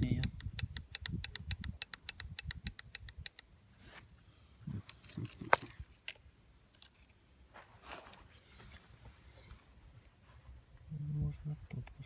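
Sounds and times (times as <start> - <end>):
scattered clicks and knocks: 0.2 - 3.5.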